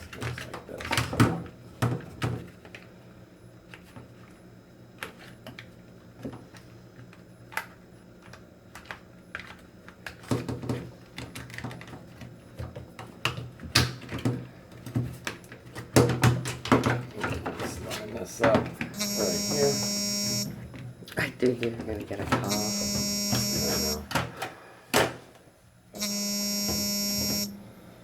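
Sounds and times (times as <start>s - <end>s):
faint low hum: 17.0s - 24.2s, 25.9s - 28.0s.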